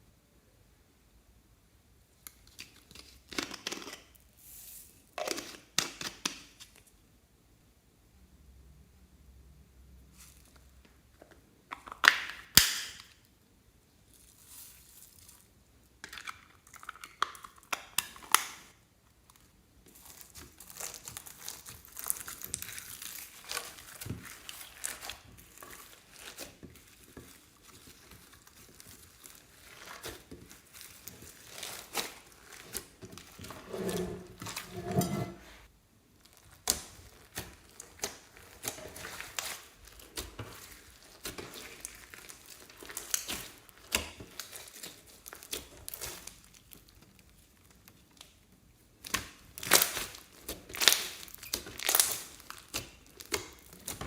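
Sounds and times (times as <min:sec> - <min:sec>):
plastic bags crinkling: 0:20.0 - 0:34.7, 0:36.2 - 0:48.3, 0:49.5 - 0:54.0.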